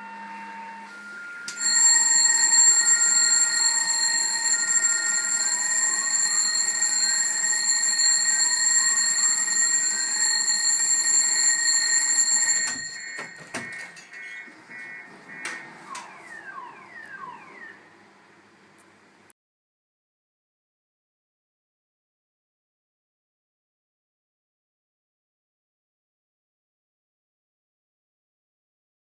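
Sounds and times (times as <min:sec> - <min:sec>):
alarm clock ringing: 0:01.5 - 0:14.5
knocks: 0:12.7 - 0:14.2.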